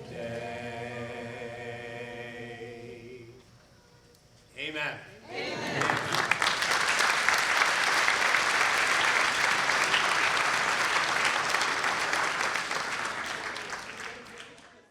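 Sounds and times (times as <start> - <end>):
audience applauding: 5.5 - 14.9.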